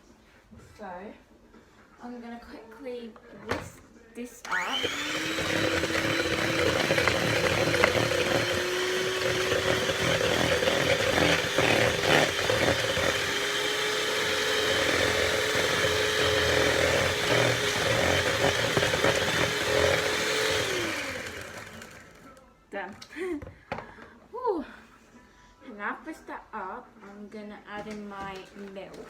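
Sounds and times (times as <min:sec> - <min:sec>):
electric hand mixer whine: 0:04.4 - 0:22.4.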